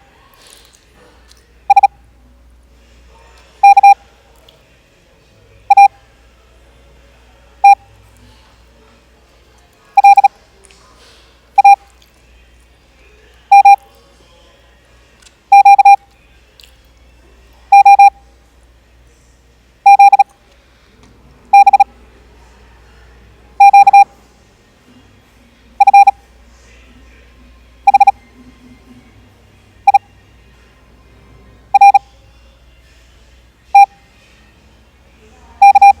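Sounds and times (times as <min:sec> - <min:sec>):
morse code beeps: 0:01.7 - 0:01.9, 0:03.6 - 0:04.0, 0:05.7 - 0:05.9, 0:10.0 - 0:10.3, 0:11.6 - 0:11.8, 0:13.5 - 0:13.8, 0:15.5 - 0:16.0, 0:17.7 - 0:18.2, 0:19.8 - 0:20.3, 0:21.5 - 0:21.9, 0:23.6 - 0:24.1, 0:25.8 - 0:26.2, 0:27.9 - 0:28.2, 0:29.8 - 0:30.1, 0:31.7 - 0:32.0, 0:35.6 - 0:36.0.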